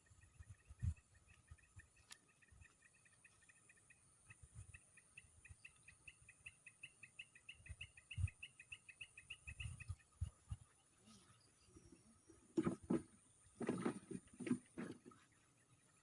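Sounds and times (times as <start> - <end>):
small animal chirping: 0.0 - 10.7.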